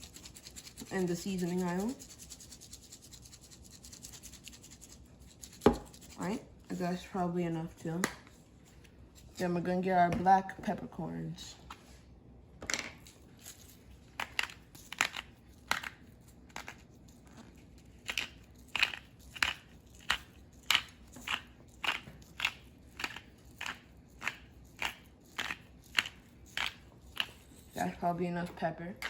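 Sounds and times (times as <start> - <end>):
pepper grinder crunching: 0.0 - 7.0, 13.0 - 27.9.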